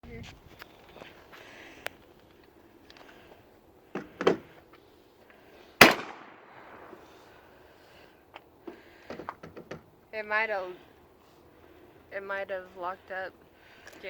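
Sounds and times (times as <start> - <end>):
shotgun blast echoing: 5.8 - 7.0.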